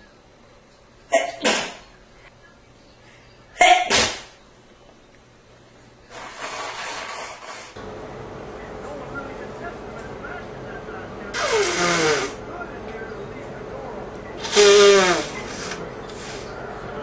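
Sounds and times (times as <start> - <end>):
man sneezing: 1.2 - 1.8
man blowing his nose: 11.4 - 12.4, 14.4 - 16.6.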